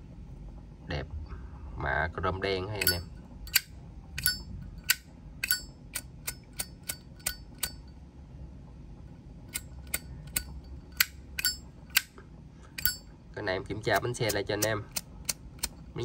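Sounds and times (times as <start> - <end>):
lighter lid clacking: 2.8 - 7.8, 9.5 - 12.1.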